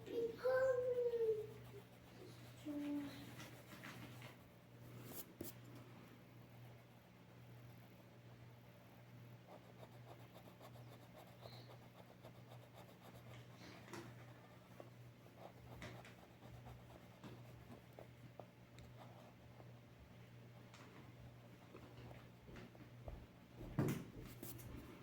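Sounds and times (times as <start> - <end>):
colored pencil scratching on paper: 0.1 - 5.6, 9.5 - 13.6, 14.5 - 19.6, 24.3 - 24.8.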